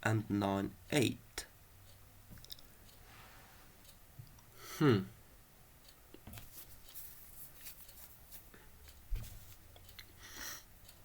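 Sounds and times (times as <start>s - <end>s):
soft low thump: 9.1s - 9.4s.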